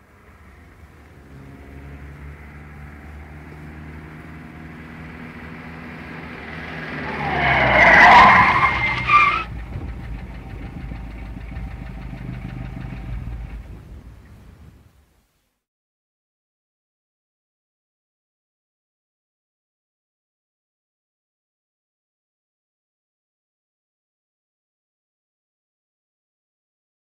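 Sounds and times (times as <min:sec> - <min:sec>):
car engine idling: 0:00.0 - 0:14.5
car engine approaching: 0:00.0 - 0:14.8
brakes squealing: 0:00.4 - 0:14.3.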